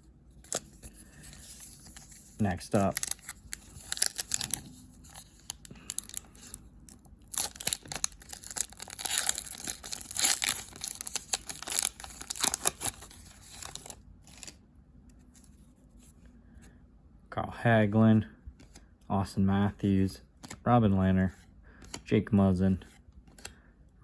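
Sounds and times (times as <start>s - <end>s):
wrapper tearing and crinkling: 0.4s - 14.6s.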